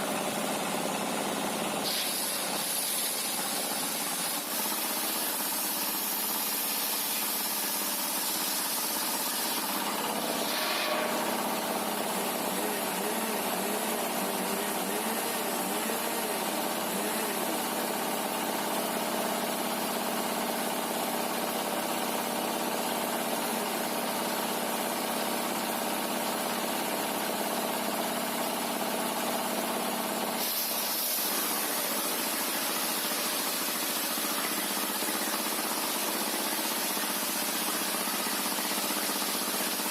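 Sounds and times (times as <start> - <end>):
motor-driven saw humming: 1.8 - 18.2.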